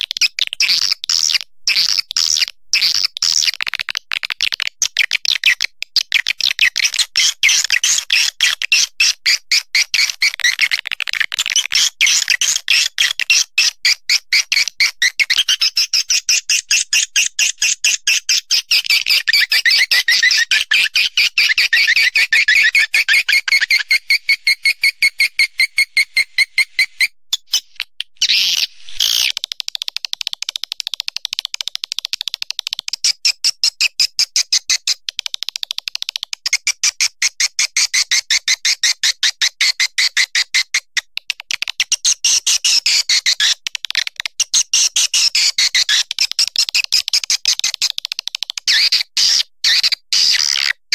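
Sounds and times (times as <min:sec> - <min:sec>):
high twittering swiftlet chirps: 0:18.7 - 0:29.3.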